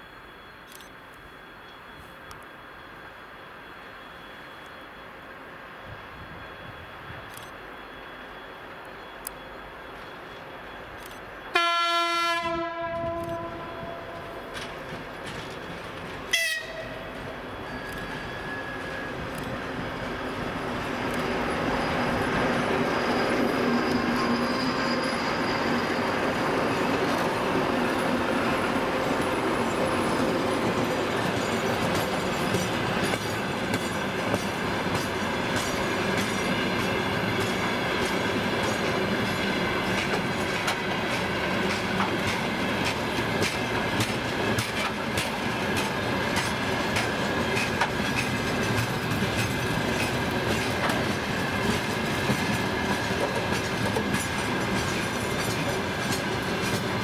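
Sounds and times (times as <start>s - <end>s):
train wheels clacking over rail joints: 14.1s - 19.7s, 29.6s - 57.0s
wheel squeal: 17.1s - 19.8s, 20.5s - 28.8s.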